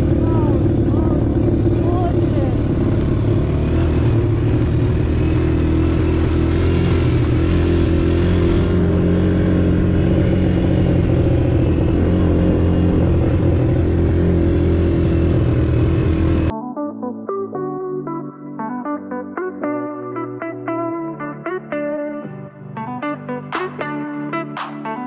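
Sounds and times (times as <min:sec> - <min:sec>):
quad bike engine rumbling: 0:00.0 - 0:16.5.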